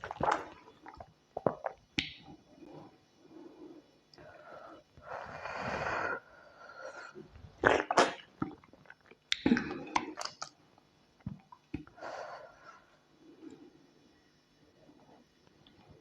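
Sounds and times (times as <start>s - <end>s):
wet mouth clicks and chewing: 7.6s - 10.6s.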